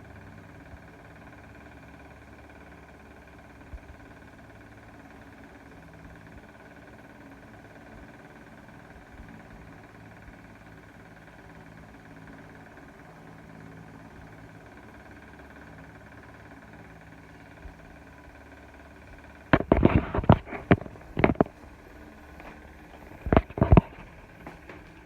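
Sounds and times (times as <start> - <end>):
faint steady hum: 0.0 - 25.0
sharp clicks and knocks: 19.5 - 25.0.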